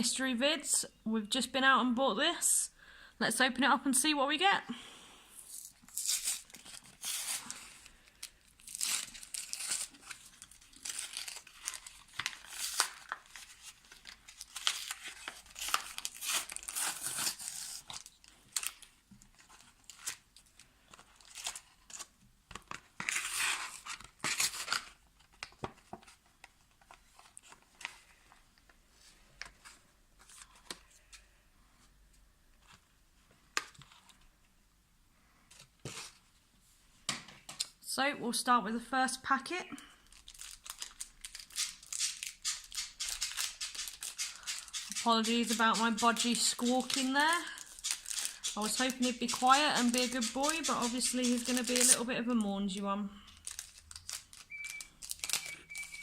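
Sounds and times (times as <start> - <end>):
cardboard and plastic packaging ripping: 5.9 - 22.1, 22.7 - 25.6, 40.1 - 52.0, 53.4 - 55.6.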